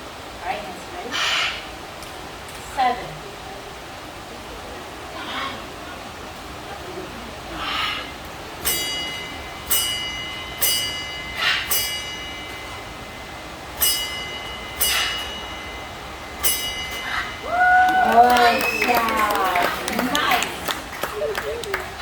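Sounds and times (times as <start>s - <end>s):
small bell ringing: 8.6s - 20.5s.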